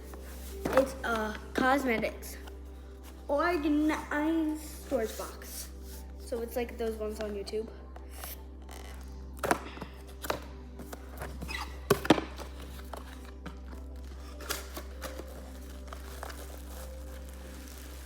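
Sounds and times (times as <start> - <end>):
packaging crinkling: 12.5 - 18.0.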